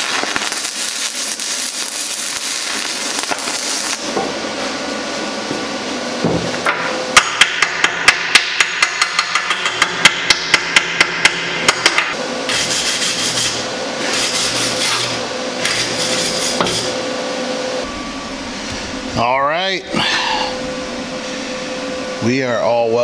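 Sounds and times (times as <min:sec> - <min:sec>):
hammer striking steel: 0:06.7 - 0:12.7
rasping scrub on metal: 0:12.5 - 0:17.0.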